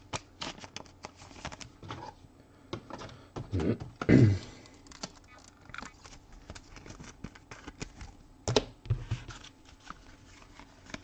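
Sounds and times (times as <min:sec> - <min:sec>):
cards being flipped through: 0:04.8 - 0:08.2, 0:09.0 - 0:11.0.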